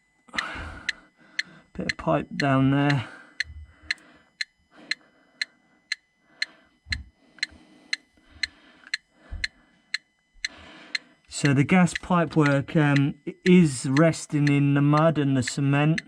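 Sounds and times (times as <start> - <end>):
gas detector ticking: 0.0 - 16.0.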